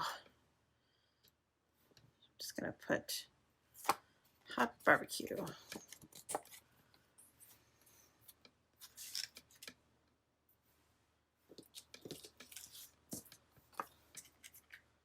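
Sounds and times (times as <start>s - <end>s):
paper rustling: 8.3s - 9.8s, 11.5s - 14.8s.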